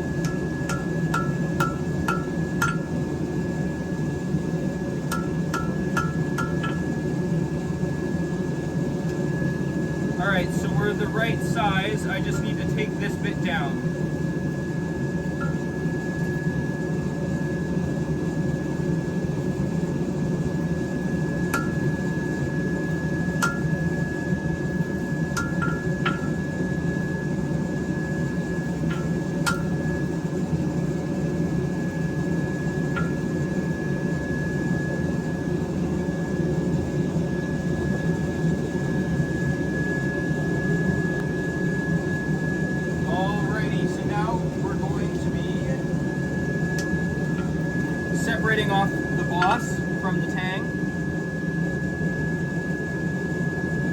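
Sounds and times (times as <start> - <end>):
forge rushing hum: 0.0 - 53.0.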